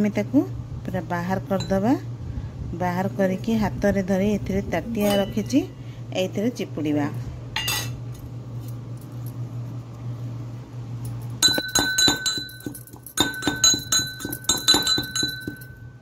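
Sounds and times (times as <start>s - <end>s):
low steady hum: 0.0s - 16.0s
utensil clinking against bowl: 11.4s - 16.0s.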